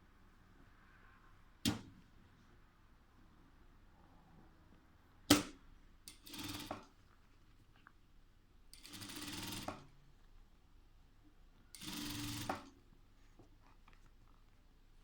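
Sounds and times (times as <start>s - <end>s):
sewing machine stitching: 6.1s - 6.9s, 8.8s - 10.0s, 11.8s - 12.8s.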